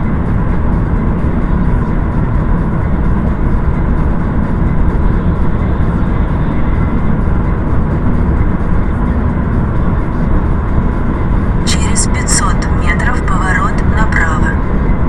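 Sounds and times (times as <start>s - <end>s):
vehicle rumble: 0.0s - 15.0s.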